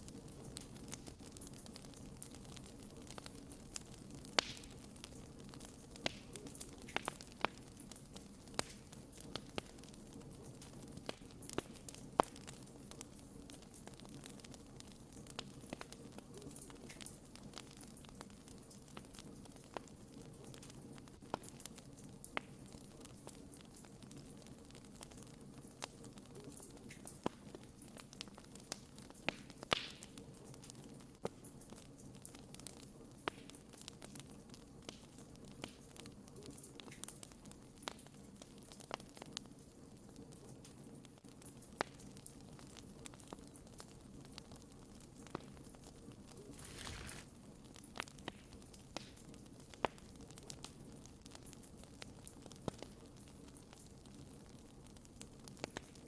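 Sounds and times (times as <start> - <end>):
bonfire crackling: 0.0 - 56.0
sharp pops from burning wood: 0.3 - 15.9, 26.9 - 30.7, 46.4 - 56.0
brief hiss: 46.5 - 47.3.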